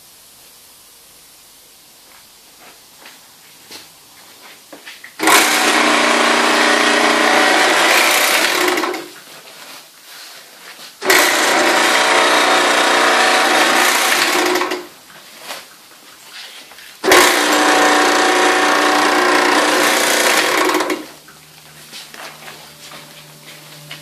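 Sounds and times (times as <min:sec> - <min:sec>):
sewing machine whirring: 0:05.2 - 0:09.2, 0:11.0 - 0:15.0, 0:17.0 - 0:21.2.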